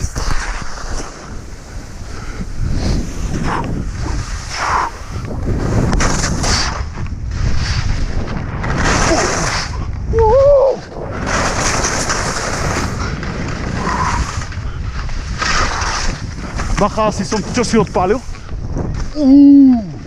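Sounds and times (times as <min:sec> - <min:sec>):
skis scraping on icy snow: 0:00.0 - 0:09.9, 0:10.8 - 0:19.1
wind buffeting microphone: 0:00.0 - 0:20.0
person calling out: 0:19.2 - 0:20.0.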